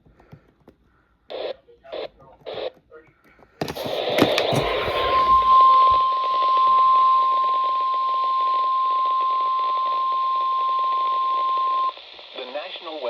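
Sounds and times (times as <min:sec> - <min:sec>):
radio static: 0:01.3 - 0:03.0, 0:03.6 - 0:06.6, 0:11.9 - 0:13.0.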